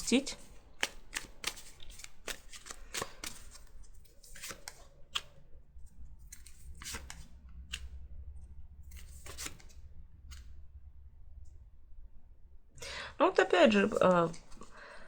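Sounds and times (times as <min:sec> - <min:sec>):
cards being shuffled: 0:00.4 - 0:05.4, 0:06.2 - 0:08.0, 0:08.8 - 0:10.5.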